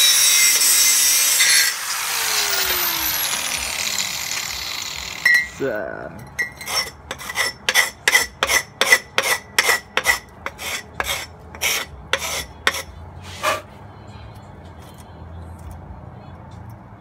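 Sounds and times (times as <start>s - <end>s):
file rasping on metal pipe: 6.4s - 13.7s.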